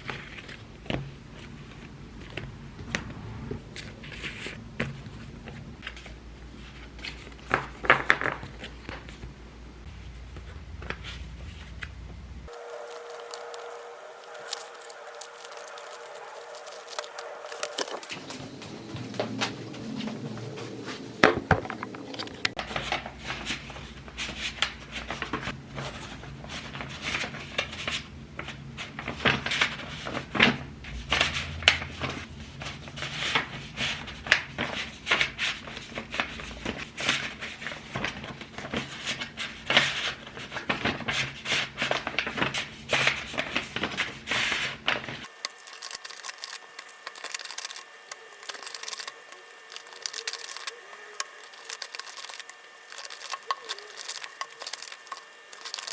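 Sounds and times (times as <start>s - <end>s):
plastic and paper crinkling: 12.5s - 22.6s, 45.2s - 55.9s.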